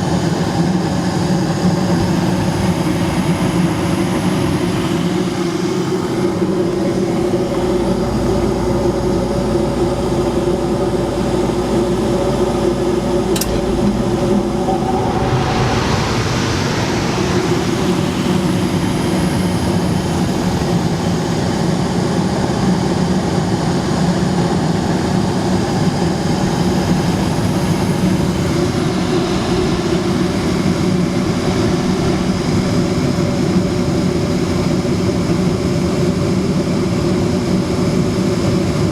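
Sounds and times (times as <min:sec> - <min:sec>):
rushing air: 0:03.8 - 0:20.1, 0:25.4 - 0:35.3
furnace humming: 0:05.3 - 0:19.7.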